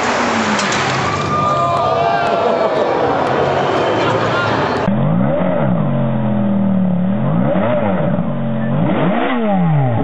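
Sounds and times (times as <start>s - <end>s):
car engine revving: 3.2s - 10.0s.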